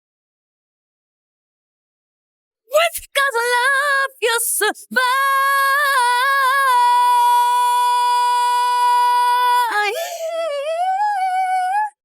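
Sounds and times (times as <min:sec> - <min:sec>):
woman singing unaccompanied: 0:02.7 - 0:12.0.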